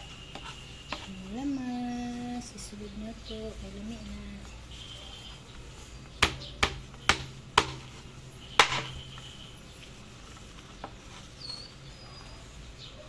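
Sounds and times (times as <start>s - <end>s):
knife chopping on cutting board: 6.2s - 7.9s.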